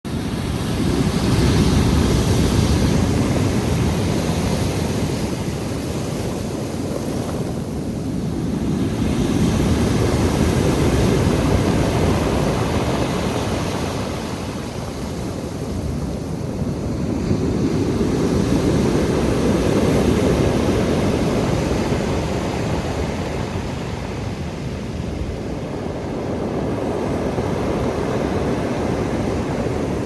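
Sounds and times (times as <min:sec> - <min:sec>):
surf breaking on shore: 0:00.2 - 0:24.2.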